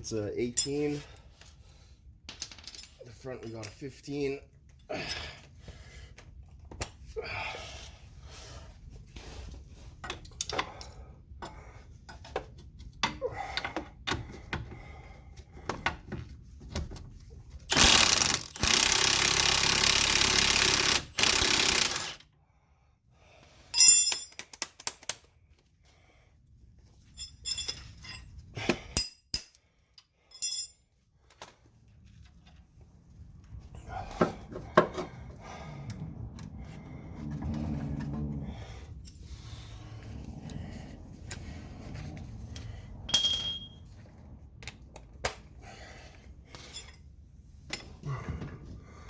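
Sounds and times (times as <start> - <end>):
hand tools clinking on metal: 0.5 - 1.1, 2.3 - 3.9, 23.8 - 24.6, 27.2 - 28.2, 29.0 - 29.6, 30.3 - 30.8, 43.1 - 43.8.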